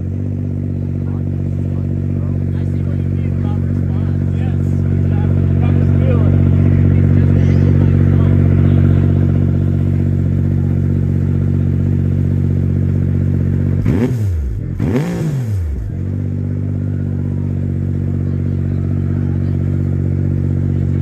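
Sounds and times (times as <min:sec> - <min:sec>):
race car engine idling: 0:00.0 - 0:21.0
engine revving blips: 0:13.7 - 0:16.1.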